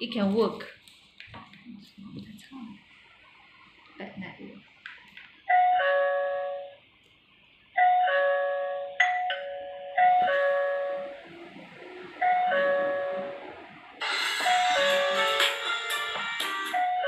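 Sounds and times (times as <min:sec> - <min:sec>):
two-tone doorbell chime: 0:07.8 - 0:11.1, 0:14.0 - 0:17.0.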